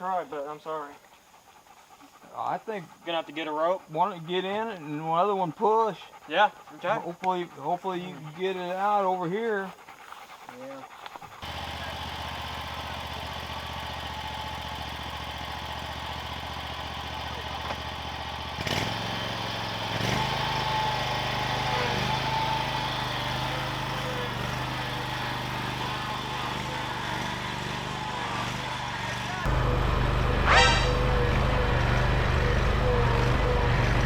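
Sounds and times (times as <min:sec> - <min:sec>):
riding lawn mower engine running: 0:11.3 - 0:34.0.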